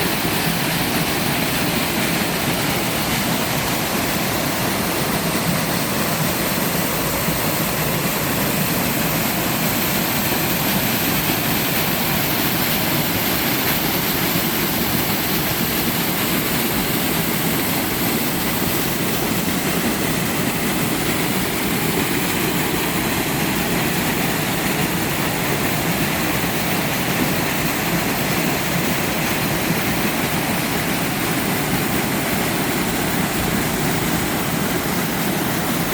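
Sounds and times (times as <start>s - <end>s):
waterfall splashing into pool: 0.0s - 35.9s.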